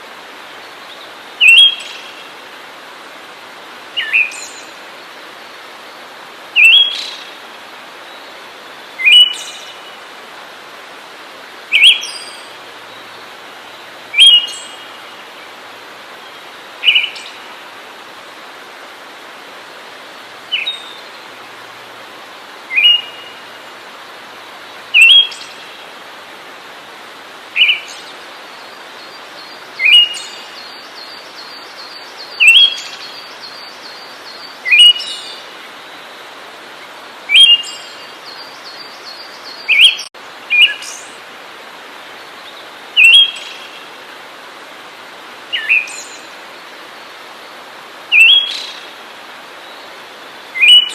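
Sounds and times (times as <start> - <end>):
steady hiss: 0.0 - 50.9
songbird sharp upward call: 14.2 - 14.8, 22.7 - 23.4, 25.0 - 25.5, 34.7 - 35.4, 39.6 - 41.0, 48.1 - 48.8, 50.6 - 50.9.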